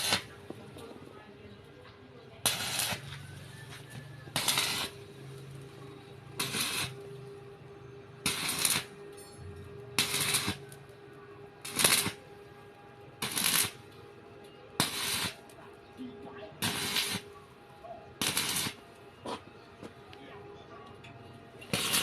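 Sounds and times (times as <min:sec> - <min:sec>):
welding arc crackling: 0:00.0 - 0:00.8, 0:02.4 - 0:07.6, 0:08.2 - 0:09.0, 0:09.7 - 0:10.9, 0:11.6 - 0:12.2, 0:13.2 - 0:14.0, 0:14.8 - 0:15.6, 0:16.6 - 0:17.4, 0:18.2 - 0:18.8, 0:21.6 - 0:22.0.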